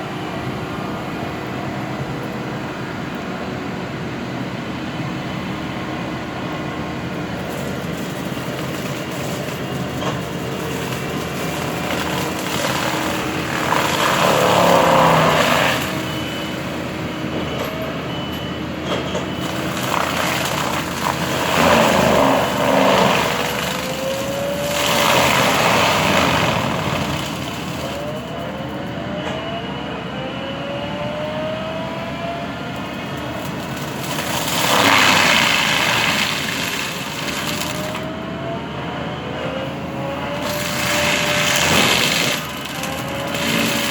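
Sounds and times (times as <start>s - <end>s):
rising engine whine: 0.0s - 43.9s
forestry mulcher running: 4.4s - 29.2s, 31.0s - 38.4s, 39.3s - 43.9s
mulcher drum grinding wood: 6.8s - 29.5s, 31.8s - 38.2s, 39.4s - 43.9s.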